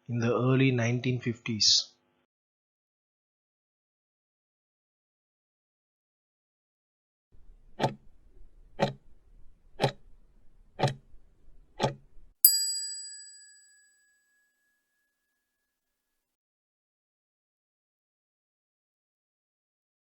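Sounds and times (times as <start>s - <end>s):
timer ticking: 9.8s - 10.0s, 10.8s - 11.0s
bright bell ding: 12.5s - 14.6s.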